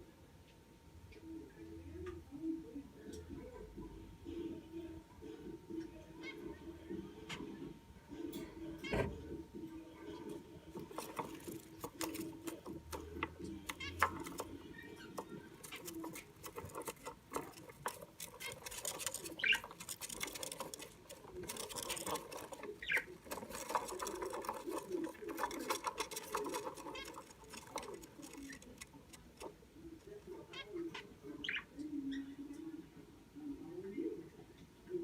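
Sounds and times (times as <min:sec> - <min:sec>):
budgerigar chattering softly: 0:10.9 - 0:32.5.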